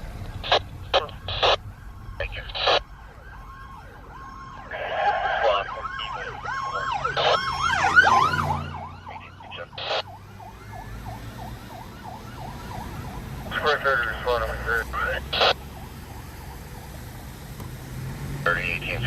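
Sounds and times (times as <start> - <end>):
fire truck sirens yelping: 0.0 - 19.0
loud siren blast: 0.4 - 16.6.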